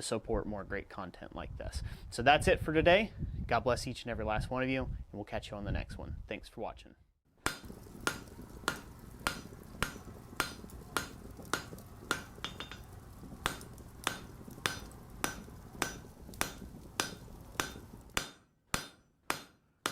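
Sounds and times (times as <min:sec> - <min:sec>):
hammer striking copper: 0:07.4 - 0:19.9.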